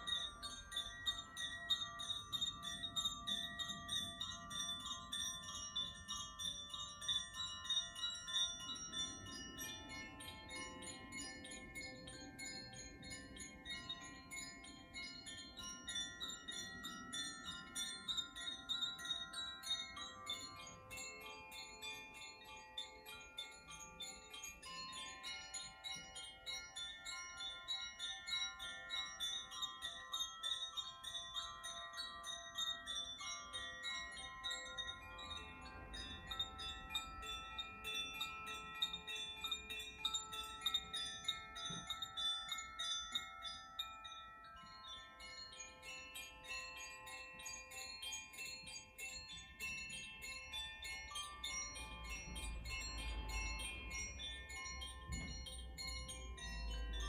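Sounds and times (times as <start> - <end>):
wind chimes tinkling: 0.0 - 57.0.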